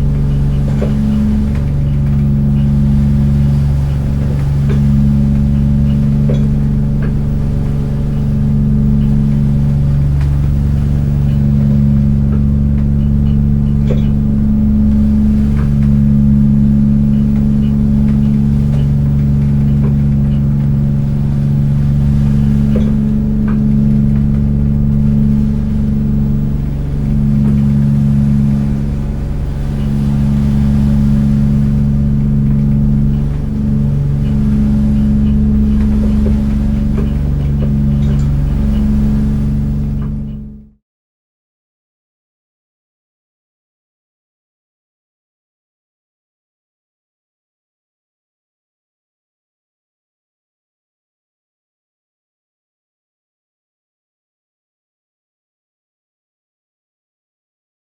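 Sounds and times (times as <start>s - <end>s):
boat engine idling: 0.0s - 40.8s.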